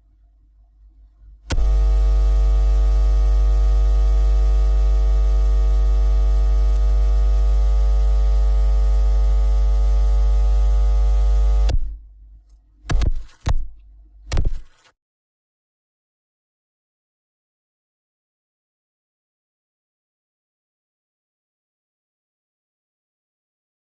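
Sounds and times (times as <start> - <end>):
loud buzzing electrical hum: 1.4 - 12.0
static hiss: 1.5 - 11.7.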